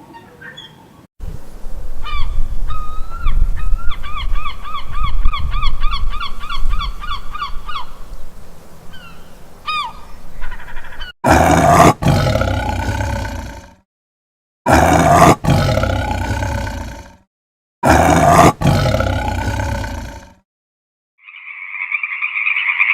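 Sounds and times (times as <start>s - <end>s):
loud roar: 11.2s - 13.8s, 14.7s - 17.2s, 17.8s - 20.4s.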